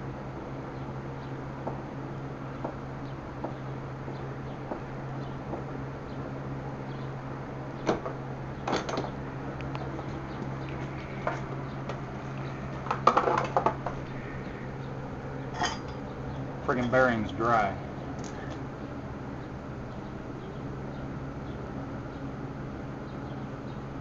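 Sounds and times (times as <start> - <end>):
low hum: 0.0 - 24.0
metal tools clinking: 15.5 - 16.0.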